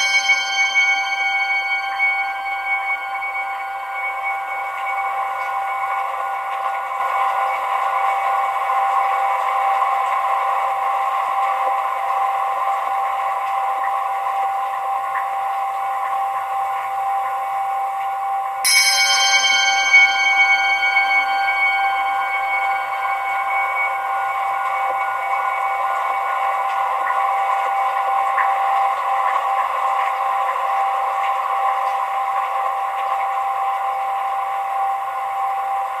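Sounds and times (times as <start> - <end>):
bell struck: 0.0 - 8.4, 18.6 - 27.8
steady ambient drone: 0.0 - 36.0.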